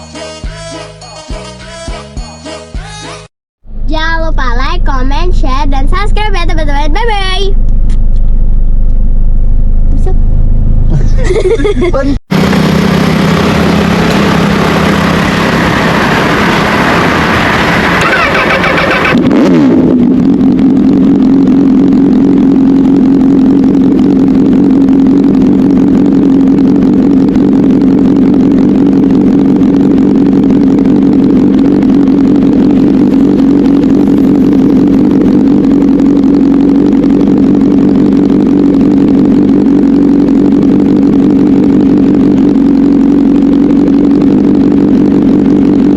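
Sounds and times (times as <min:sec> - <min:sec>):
motorcycle engine running loud: 0:09.8 - 0:45.9.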